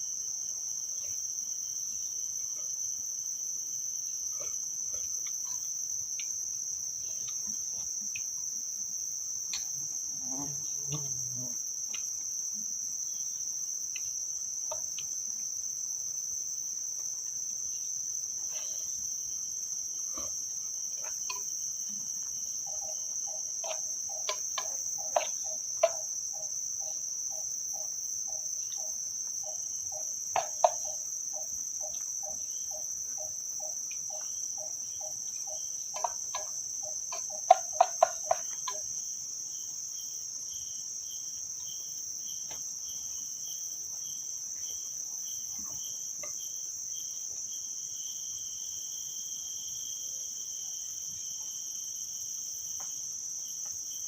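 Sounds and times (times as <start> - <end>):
crickets chirping: 0.0 - 54.0
faint ticks: 4.4 - 6.4, 7.1 - 8.4, 9.4 - 12.4.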